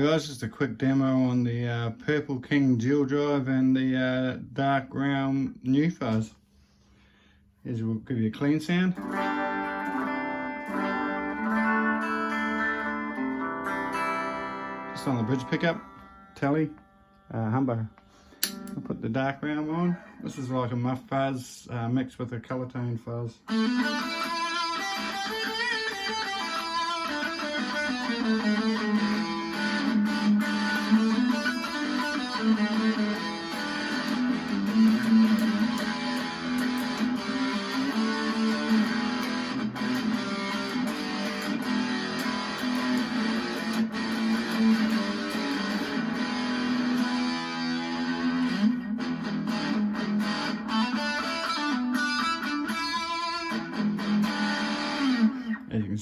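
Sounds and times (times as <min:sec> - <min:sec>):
fuzzed electric guitar riffs: 0:09.0 - 0:20.5, 0:23.4 - 0:55.8.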